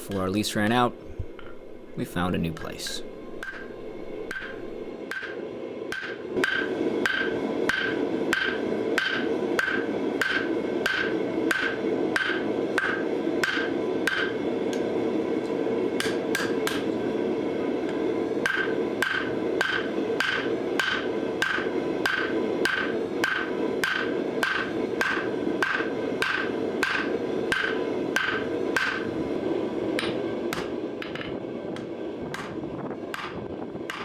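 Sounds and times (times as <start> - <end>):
steady rushing noise: 0.0 - 8.2
hammer striking steel on anvil: 1.2 - 14.4, 16.0 - 16.9, 18.4 - 29.1, 30.0 - 31.4, 33.2 - 34.0.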